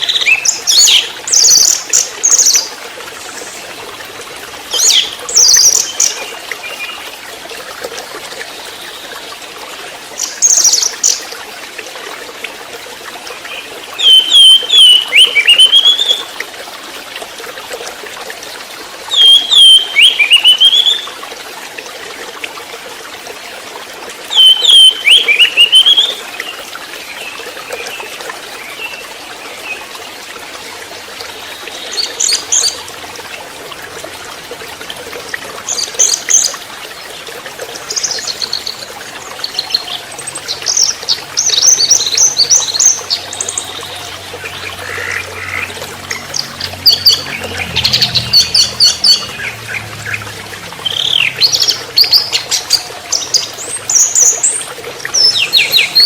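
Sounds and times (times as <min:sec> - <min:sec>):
thrush calling: 0:39.5 - 0:56.0.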